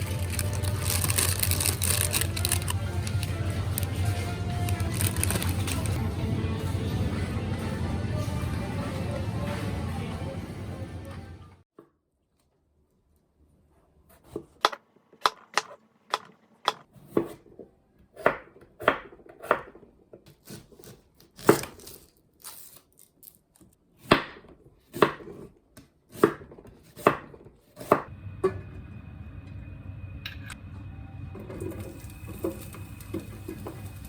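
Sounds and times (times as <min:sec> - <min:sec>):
knife chopping on cutting board: 0:24.0 - 0:25.5, 0:26.1 - 0:28.1.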